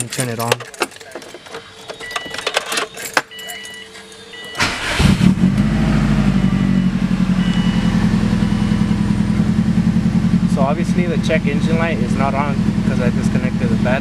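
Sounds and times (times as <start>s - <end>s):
short beeps: 3.3s - 4.9s, 6.2s - 9.2s
car engine idling: 4.0s - 14.0s.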